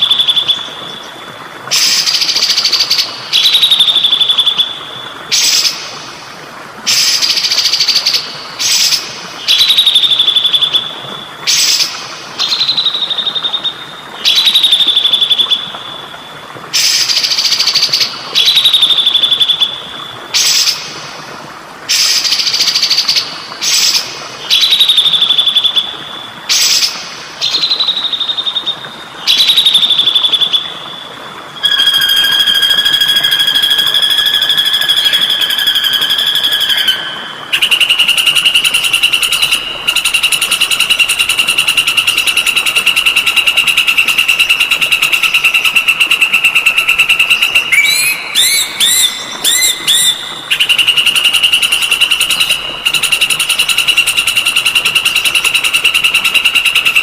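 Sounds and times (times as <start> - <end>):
trickling water: 0.0 - 57.0
two-note bird whistle: 31.6 - 37.2
songbird call: 31.6 - 57.0.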